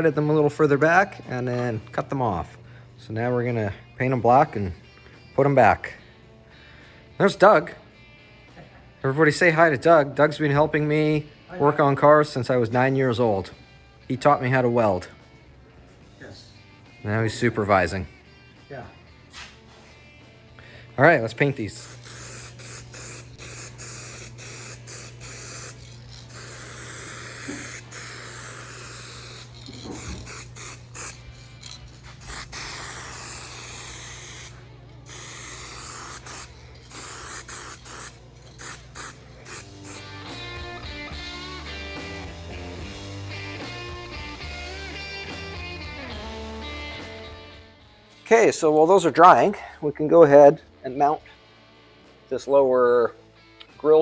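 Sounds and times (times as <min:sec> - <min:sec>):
surf-rock music: 0:00.0 - 0:38.0, 0:39.0 - 0:54.0
spray can hissing: 0:21.4 - 0:41.2.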